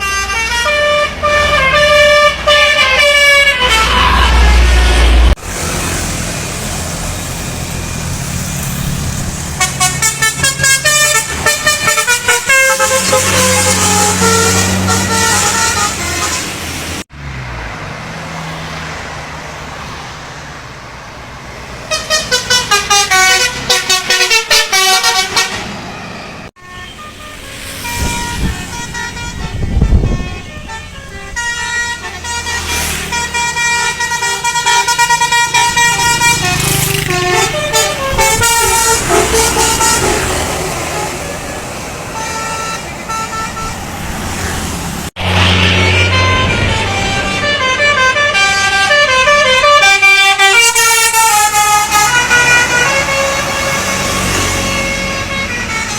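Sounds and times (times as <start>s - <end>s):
musical air horns: 0.0s - 5.8s, 9.4s - 17.0s, 21.9s - 25.9s, 26.6s - 43.9s, 45.2s - 55.9s
bus engine running: 0.0s - 17.2s, 17.8s - 55.9s.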